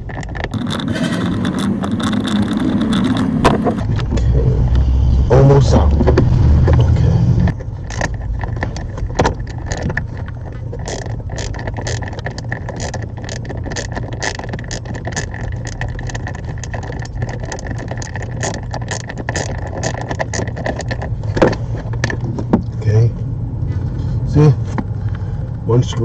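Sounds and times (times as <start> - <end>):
screw clicking and scraping: 0.0 - 3.9, 7.8 - 22.3.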